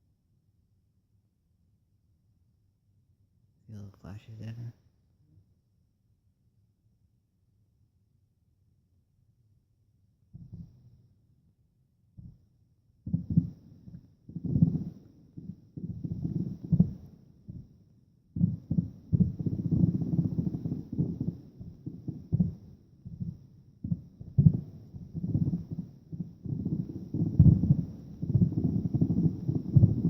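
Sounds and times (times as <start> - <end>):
distant fireworks booming: 13.1 - 30.0.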